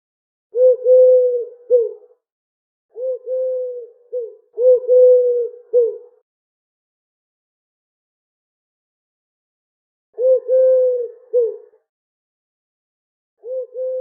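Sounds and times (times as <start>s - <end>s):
pigeon cooing: 0.6s - 2.2s, 2.9s - 6.2s, 10.2s - 11.8s, 13.4s - 14.0s.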